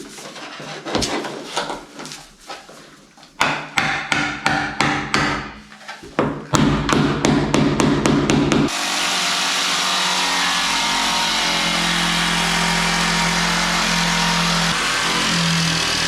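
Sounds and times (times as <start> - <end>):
hammer knocking floorboards: 3.4 - 8.7.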